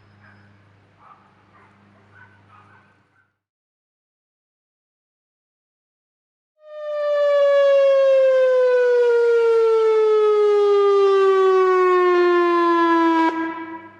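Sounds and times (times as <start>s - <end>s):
warning siren wail: 6.6s - 13.9s.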